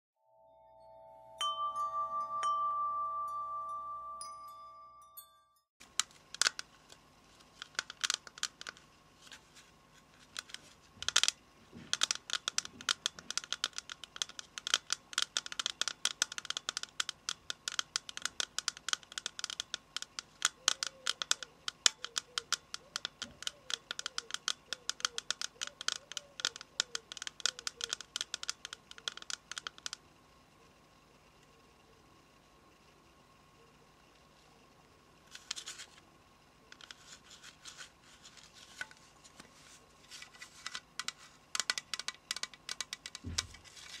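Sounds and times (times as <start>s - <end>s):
fingernails tapping on hard surface: 20.7s - 30.0s.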